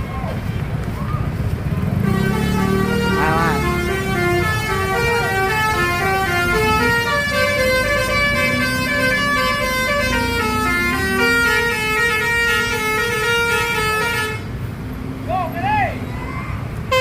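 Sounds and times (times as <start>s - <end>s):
bus engine rumble: 0.0s - 17.0s
bus musical horn playing a tune: 2.0s - 14.5s.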